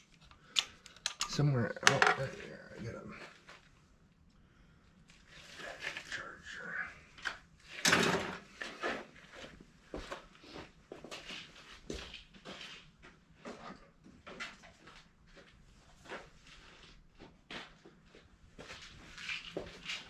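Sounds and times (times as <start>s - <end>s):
tools and parts clicking and clunking: 0.0s - 2.4s, 7.8s - 8.4s.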